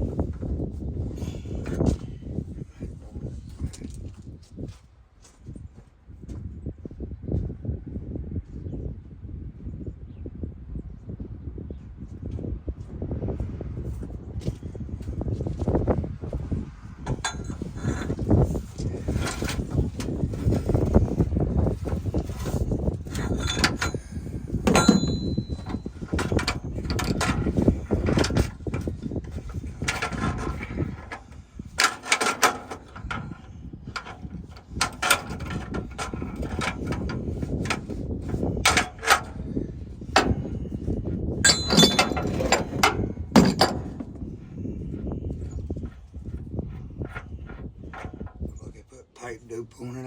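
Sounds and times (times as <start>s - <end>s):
wind buffeting microphone: 0.0s - 50.0s
hand tools clanking on metal pipe: 17.1s - 18.3s, 19.0s - 21.1s, 21.9s - 39.4s, 40.1s - 40.6s, 41.4s - 44.2s
sharp ringing metal strikes: 24.7s - 25.9s.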